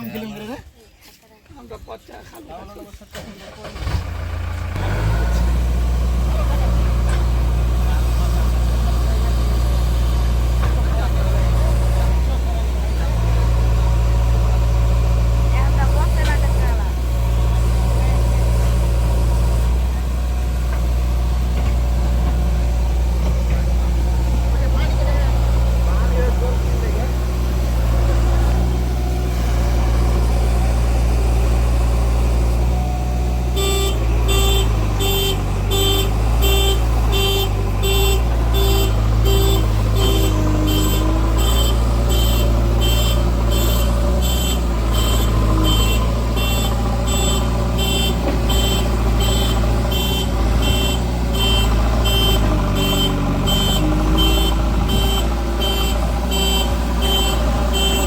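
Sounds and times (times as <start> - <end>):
diesel engine running: 2.7 - 58.0
reversing alarm beeping: 33.6 - 58.0.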